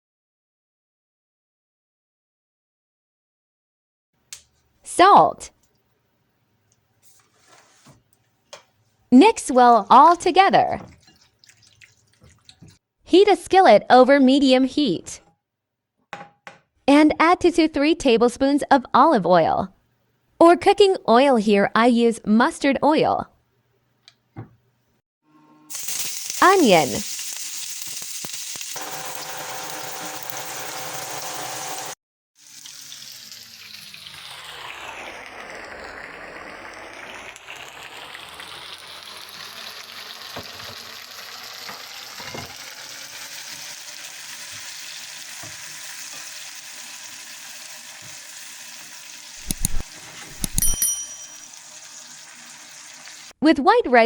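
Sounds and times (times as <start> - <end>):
utensil knocks: 16.1 - 16.7
food sizzling in hot oil: 25.7 - 53.4.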